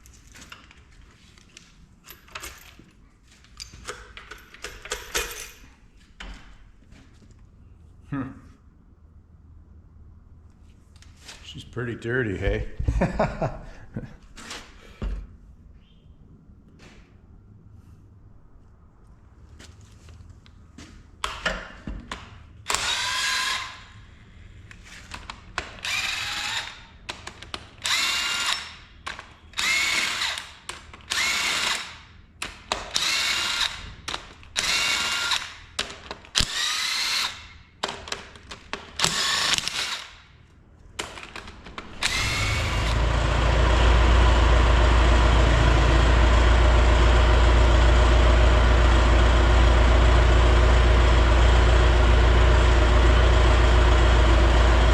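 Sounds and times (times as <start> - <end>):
power tool bursts spinning up: 22.7 - 23.8, 25.8 - 26.8, 29.6 - 30.4, 31.1 - 31.9, 32.9 - 33.8, 34.6 - 35.5, 36.4 - 37.5, 39.0 - 40.1, 42.0 - 54.9
low machine hum: 41.9 - 54.9.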